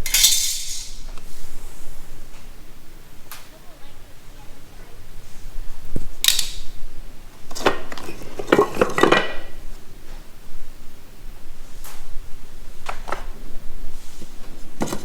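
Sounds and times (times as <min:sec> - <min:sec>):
wooden parts clattering and knocking: 0:00.0 - 0:01.0, 0:07.5 - 0:09.6.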